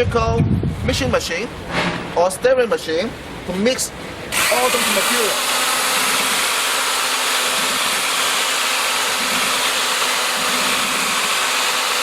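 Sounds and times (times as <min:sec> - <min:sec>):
mixing drill whirring: 0:04.3 - 0:12.0.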